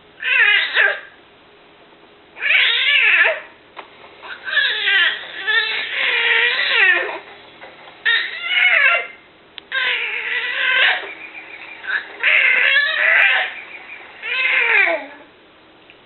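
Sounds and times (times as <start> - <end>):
high-pitched crying or screaming: 0.2 - 1.1, 2.4 - 3.5, 4.3 - 7.2, 8.1 - 15.3.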